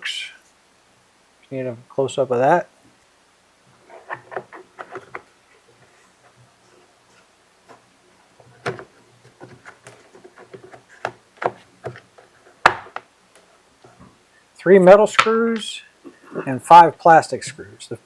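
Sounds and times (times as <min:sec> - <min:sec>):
plastic parts clicking and tapping: 0:04.0 - 0:05.3.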